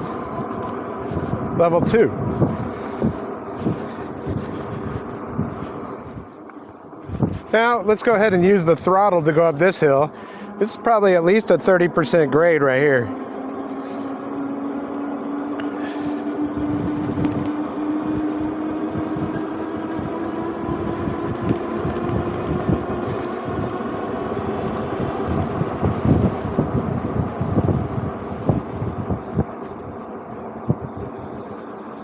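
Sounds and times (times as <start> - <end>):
wind buffeting microphone: 0.0 - 32.0
electric motor whining: 9.6 - 32.0.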